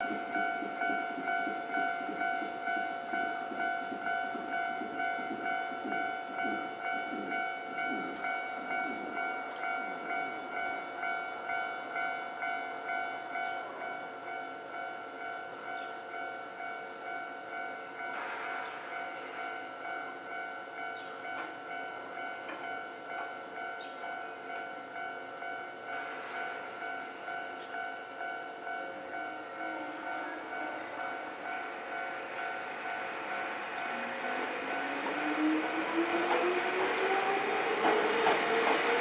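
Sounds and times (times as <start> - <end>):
level-crossing alarm bell: 0.0 - 39.0.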